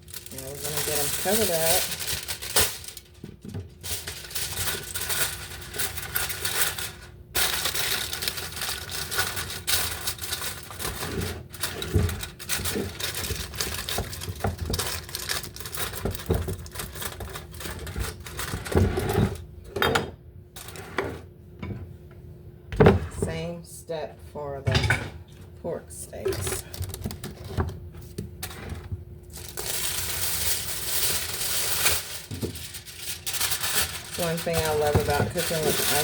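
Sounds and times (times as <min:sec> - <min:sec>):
aluminium foil crinkling: 0:00.0 - 0:18.7, 0:26.3 - 0:36.0.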